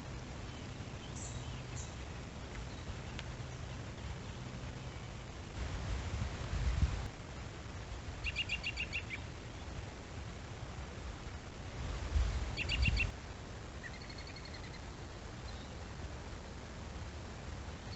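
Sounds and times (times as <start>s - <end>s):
small bird chirping: 0.4s - 5.4s, 8.2s - 9.8s, 12.5s - 13.1s, 13.8s - 15.8s
bird trill: 8.2s - 9.2s, 12.6s - 13.1s, 13.8s - 14.9s.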